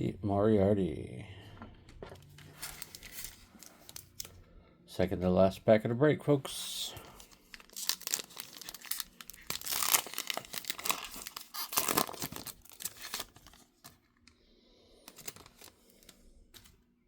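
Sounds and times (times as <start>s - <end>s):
wrapper tearing and crinkling: 2.3s - 4.3s, 7.2s - 14.0s, 15.1s - 16.1s.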